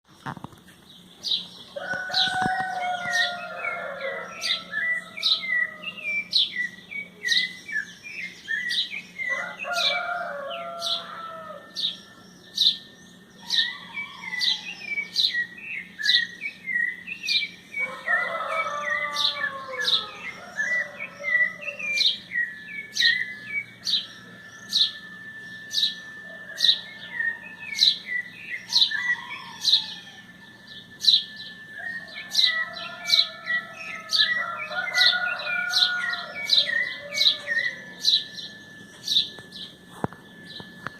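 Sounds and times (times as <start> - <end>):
birds singing: 0.1 - 40.9
sharp high bird chirps: 1.1 - 40.9
rooster crowing: 1.8 - 6.4, 9.2 - 12.3, 13.3 - 15.3, 17.8 - 38.8.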